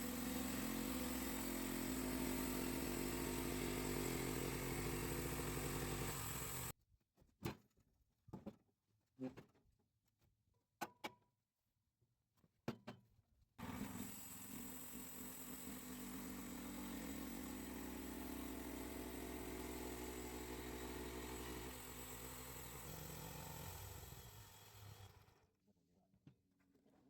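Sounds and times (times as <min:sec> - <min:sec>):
gasoline engine running: 0:00.0 - 0:06.7.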